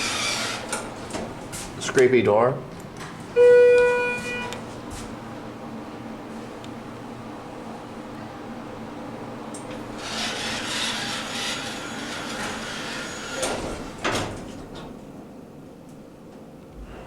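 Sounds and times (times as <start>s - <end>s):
elevator doors scraping: 0.0s - 1.0s, 9.7s - 14.9s.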